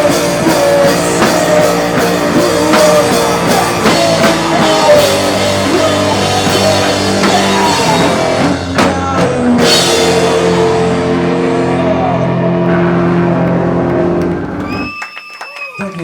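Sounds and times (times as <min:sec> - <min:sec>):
live rock band playing: 0:00.0 - 0:15.1.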